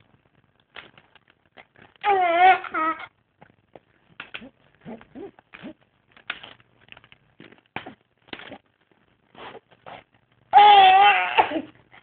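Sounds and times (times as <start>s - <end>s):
baby cooing: 2.0s - 3.1s, 10.6s - 11.7s
baby grunts and mouth clicks: 7.4s - 8.7s.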